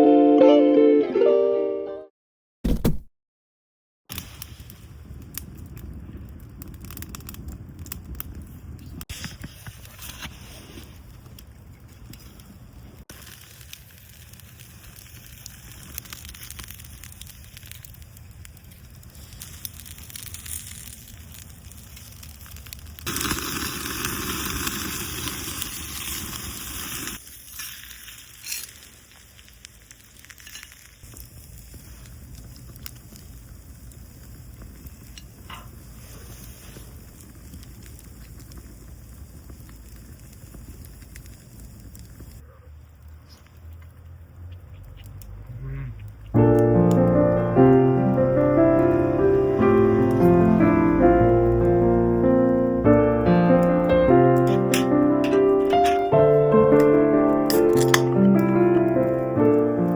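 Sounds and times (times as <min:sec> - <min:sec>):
campfire crackling and popping: 0:04.1 - 0:59.9
food sizzling: 0:19.1 - 0:42.4, 0:46.3 - 0:59.9.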